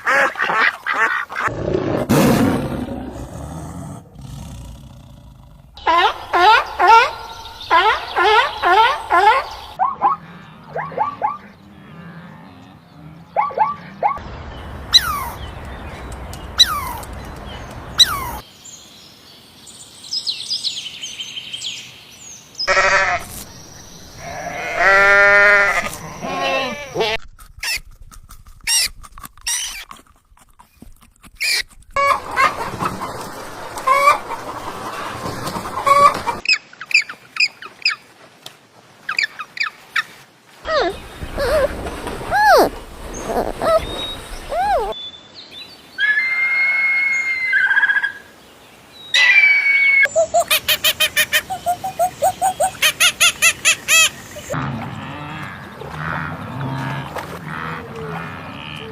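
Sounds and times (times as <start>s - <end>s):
animal calls: 40.7s - 45.0s.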